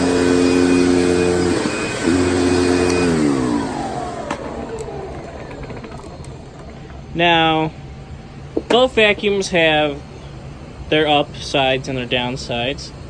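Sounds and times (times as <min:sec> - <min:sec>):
motor clicks winding down: 0:00.0 - 0:07.1
vacuum cleaner motor humming: 0:00.0 - 0:07.2.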